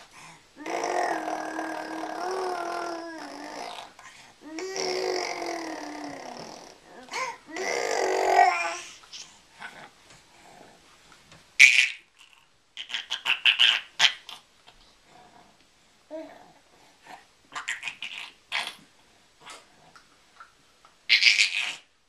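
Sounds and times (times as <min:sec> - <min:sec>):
child making mouth noises: 0:00.6 - 0:08.8, 0:17.5 - 0:18.8, 0:21.1 - 0:21.9.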